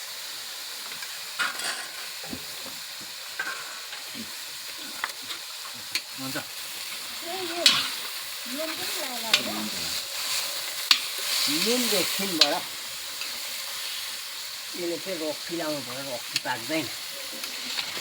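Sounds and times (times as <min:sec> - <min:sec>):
meat sizzling in a pan: 0:00.0 - 0:18.0.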